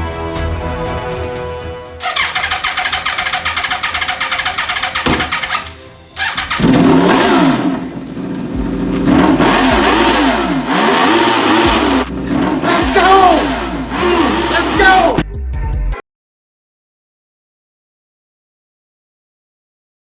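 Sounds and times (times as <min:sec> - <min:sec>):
background music: 0:00.0 - 0:16.0
motorcycle engine starting and revving: 0:02.0 - 0:15.2.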